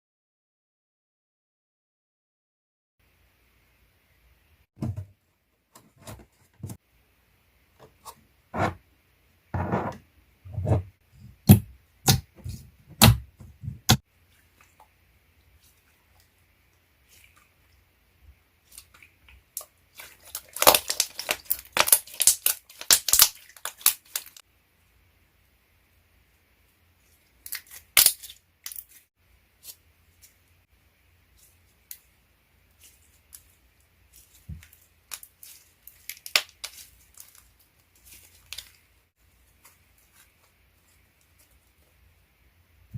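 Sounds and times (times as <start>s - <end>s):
packaging crinkling and tearing: 20.0s - 24.4s, 34.7s - 38.8s.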